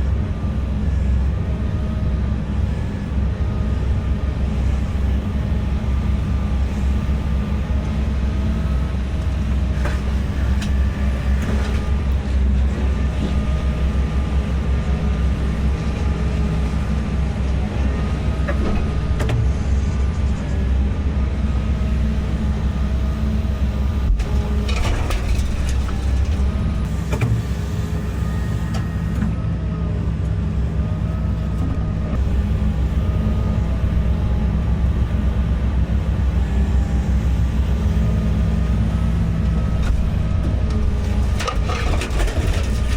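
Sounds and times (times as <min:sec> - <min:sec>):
heavy diesel engine droning: 0:00.0 - 0:42.9.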